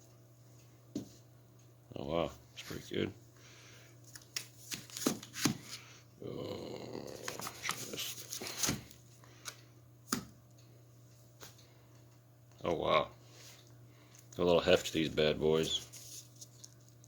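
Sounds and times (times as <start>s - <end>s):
packaging rustling: 7.2s - 9.0s.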